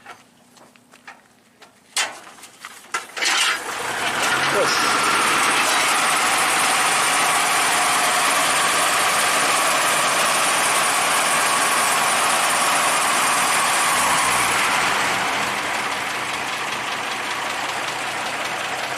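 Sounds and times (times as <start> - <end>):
truck engine running: 3.5 - 18.9.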